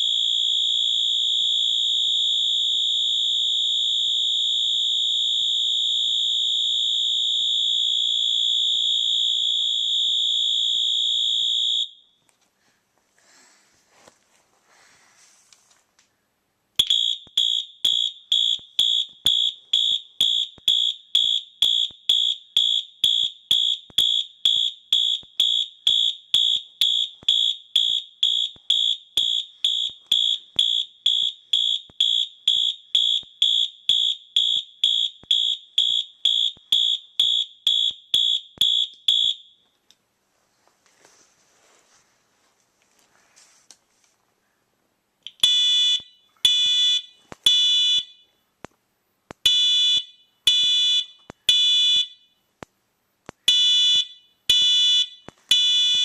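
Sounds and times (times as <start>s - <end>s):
fire alarm horn beeping: 0.0s - 12.1s, 16.8s - 39.7s, 45.3s - 48.4s, 49.5s - 52.4s, 53.5s - 56.0s.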